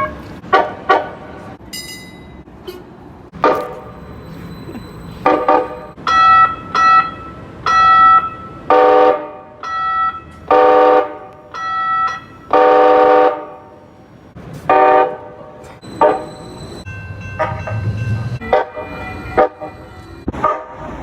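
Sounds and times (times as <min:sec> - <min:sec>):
train horn blasts: 0:08.7 - 0:09.7, 0:10.5 - 0:13.7, 0:14.7 - 0:15.4, 0:18.4 - 0:19.8.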